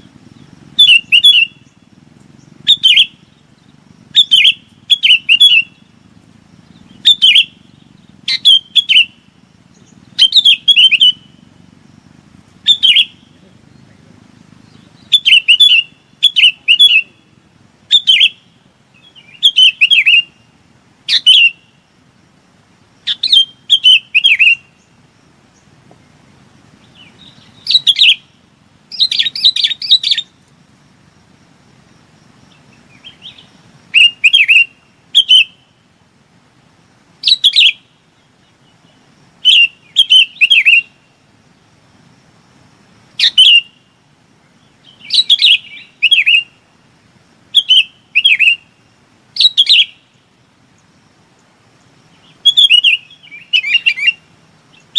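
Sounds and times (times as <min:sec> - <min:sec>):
bulbul chirping flock call: 0:00.0 - 0:20.5, 0:21.1 - 0:21.8, 0:25.6 - 0:30.5, 0:32.5 - 0:35.8, 0:37.2 - 0:41.1, 0:43.2 - 0:46.6, 0:49.4 - 0:50.3, 0:51.8 - 0:54.9.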